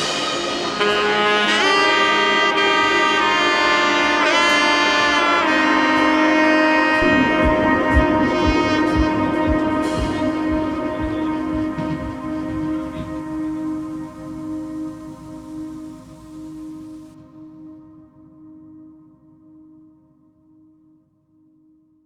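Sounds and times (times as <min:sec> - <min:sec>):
melody with bending notes: 0:00.0 - 0:17.0
low thumping beat: 0:07.0 - 0:16.2.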